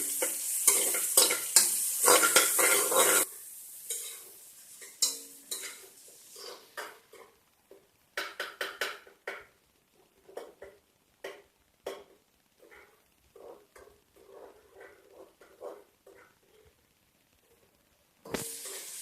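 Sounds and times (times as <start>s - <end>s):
spoon scraping cooking pot: 0.0s - 3.3s, 3.9s - 7.4s, 10.2s - 16.7s.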